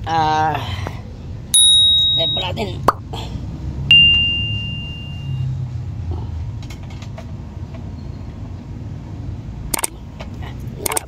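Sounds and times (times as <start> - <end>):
ringing metallic strike: 1.6 - 2.5, 3.9 - 5.5.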